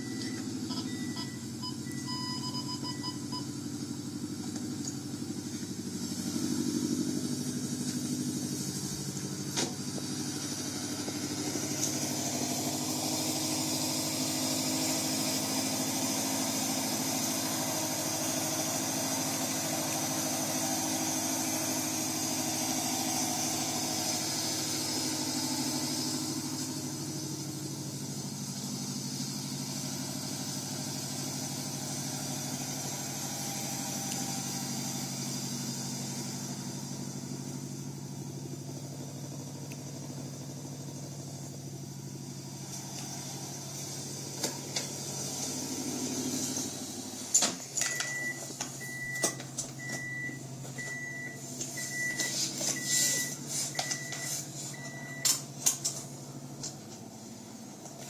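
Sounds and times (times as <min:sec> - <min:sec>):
short high beeps: 0:00.0 - 0:03.5
car engine idling: 0:00.0 - 0:58.0.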